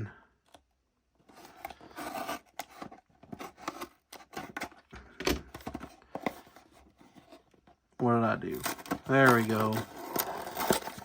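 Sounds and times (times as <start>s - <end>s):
packaging rustling and tearing: 8.4s - 11.0s.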